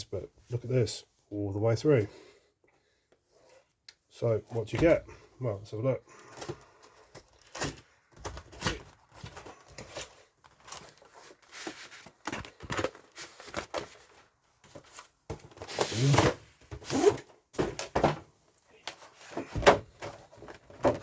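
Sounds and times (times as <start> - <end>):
packaging clicks and knocks: 6.2 - 14.1, 18.9 - 21.0.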